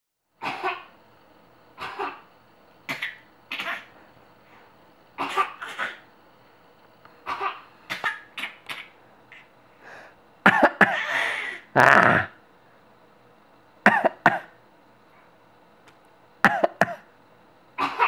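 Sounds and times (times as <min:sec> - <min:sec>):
baby coughing: 0:00.4 - 0:00.9, 0:01.8 - 0:02.3, 0:02.9 - 0:03.9, 0:05.2 - 0:06.1, 0:07.2 - 0:09.0, 0:10.4 - 0:11.1, 0:13.8 - 0:14.6, 0:16.4 - 0:17.1, 0:17.8 - 0:18.0
adult coughing: 0:01.8 - 0:02.3, 0:05.2 - 0:06.0, 0:10.4 - 0:12.4, 0:13.8 - 0:14.6, 0:16.4 - 0:17.1, 0:17.8 - 0:18.0.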